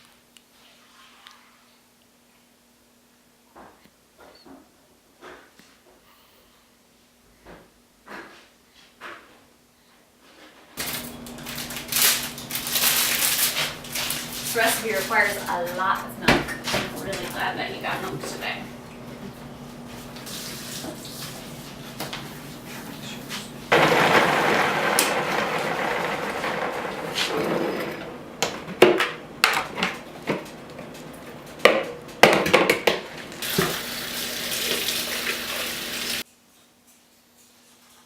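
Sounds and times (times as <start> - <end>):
tap water running into sink: 32.8 - 36.2.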